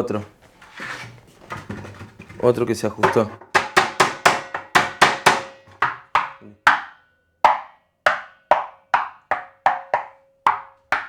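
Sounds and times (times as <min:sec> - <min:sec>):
sharp wooden knocks on drum: 0:03.0 - 0:11.0.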